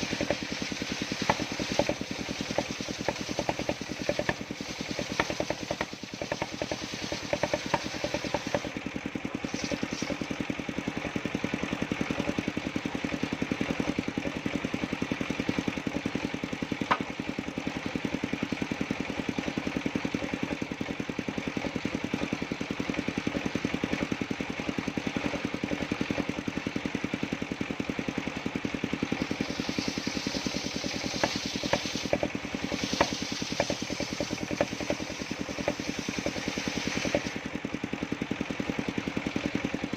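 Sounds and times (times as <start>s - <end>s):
engine driving circular saw: 0.0s - 39.9s.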